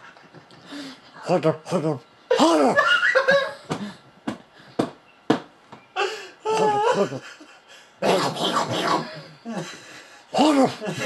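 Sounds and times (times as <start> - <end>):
wheezing laughter: 2.3 - 4.0, 6.0 - 11.0.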